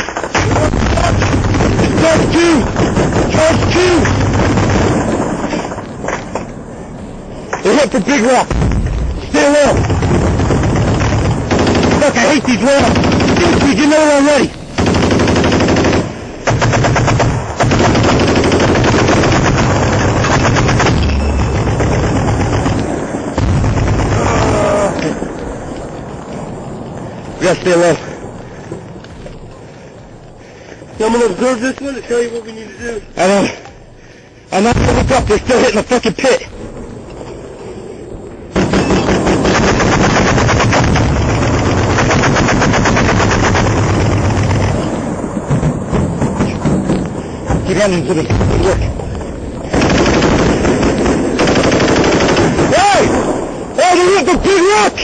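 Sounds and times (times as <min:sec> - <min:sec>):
automatic gunfire: 0:09.7 - 0:13.9, 0:14.8 - 0:22.8, 0:38.5 - 0:44.8, 0:49.7 - 0:53.0.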